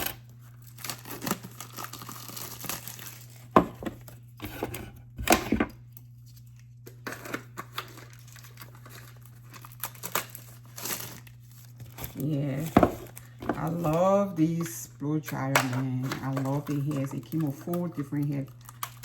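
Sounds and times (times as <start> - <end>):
packaging wrapper tearing and crinkling: 0.0 - 3.6, 5.8 - 14.1, 16.2 - 19.0.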